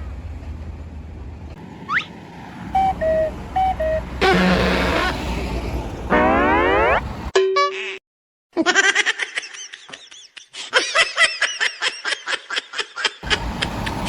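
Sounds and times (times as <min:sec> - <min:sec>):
short steady tone: 0:02.8 - 0:05.1
high-pitched laughter: 0:08.6 - 0:14.0.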